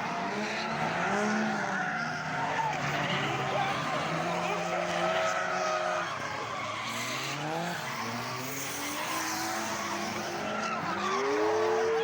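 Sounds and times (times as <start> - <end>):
car engines revving: 0.0 - 12.0
tyres skidding and squealing: 0.0 - 12.0.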